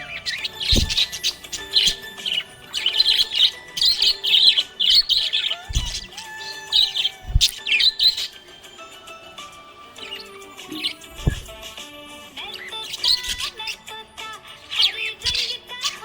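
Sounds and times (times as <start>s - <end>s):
budgerigar chirping and warbling: 0.0s - 8.5s, 10.0s - 11.8s, 12.4s - 16.0s
low thuds: 0.7s - 1.2s, 5.7s - 6.1s, 7.2s - 7.6s, 11.1s - 11.8s.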